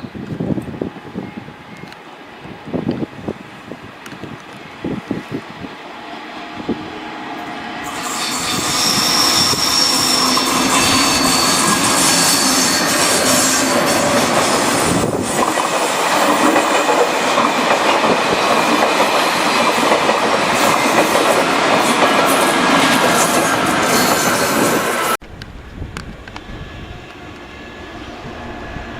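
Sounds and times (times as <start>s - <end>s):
train passing on track: 0.0s - 28.9s
high-pitched wheel squeal: 7.8s - 15.1s.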